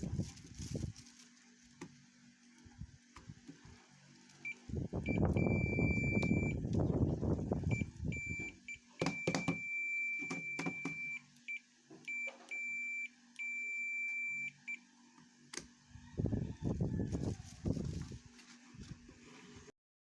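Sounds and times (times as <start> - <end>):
rustling handling noise: 0.0 - 4.7, 16.9 - 19.7
multimeter buzzer beeping: 4.5 - 6.6, 7.7 - 14.8.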